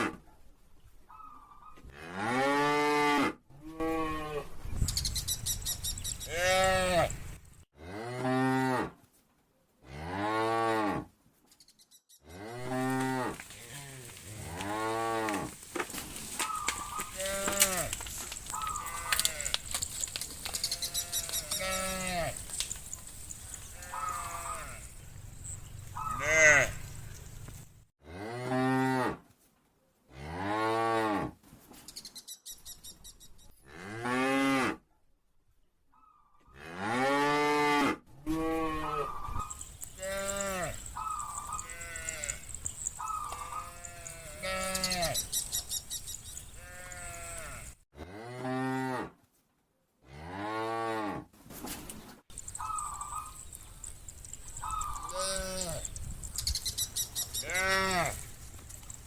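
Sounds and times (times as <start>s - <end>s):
cattle mooing: 6.3s - 7.2s, 16.6s - 27.0s, 36.6s - 45.3s, 46.6s - 49.1s, 57.4s - 59.0s
short high cattle calls: 16.3s - 27.4s, 38.3s - 47.8s, 54.2s - 55.9s.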